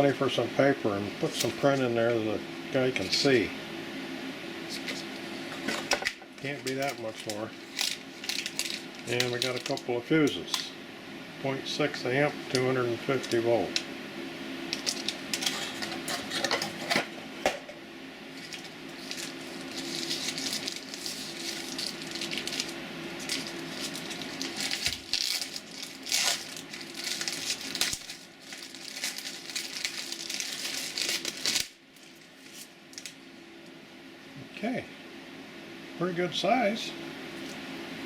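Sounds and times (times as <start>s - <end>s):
steady low hum: 0.0s - 38.0s
packaging crinkling and rustling: 5.6s - 10.6s, 14.7s - 17.0s, 18.3s - 33.2s.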